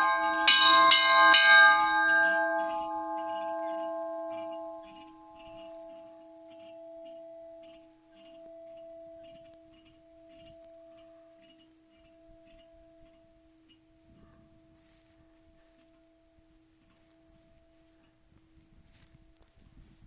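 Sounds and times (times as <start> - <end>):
bell-like ringing tone: 0.0 - 13.4.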